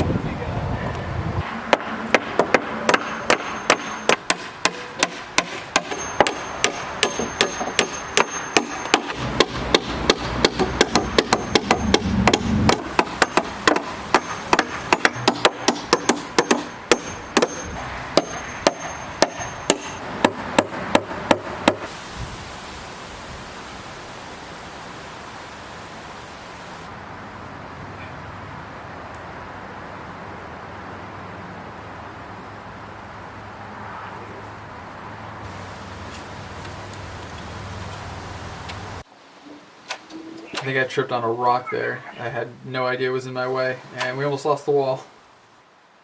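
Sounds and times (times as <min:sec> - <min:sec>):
hammer driving nails into wood: 0:01.7 - 0:21.9.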